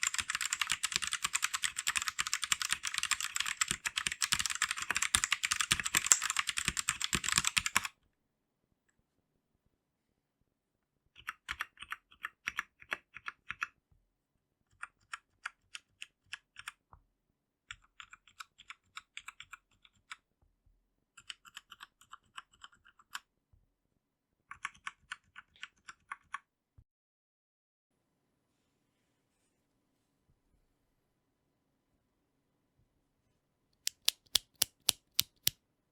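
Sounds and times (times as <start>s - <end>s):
mechanical keyboard typing: 0.0s - 7.9s, 11.2s - 13.7s, 17.7s - 20.2s, 21.2s - 23.2s, 24.5s - 26.4s, 33.9s - 35.5s.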